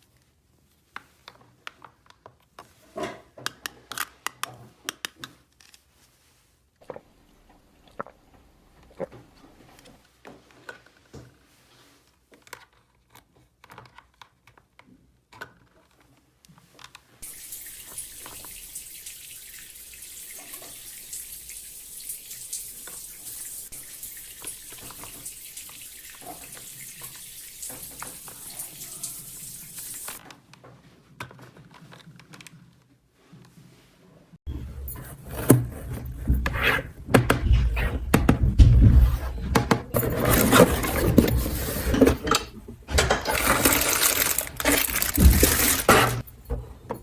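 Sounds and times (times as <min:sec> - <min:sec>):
water running in a stream: 0:17.2 - 0:30.2, 0:39.9 - 0:46.3.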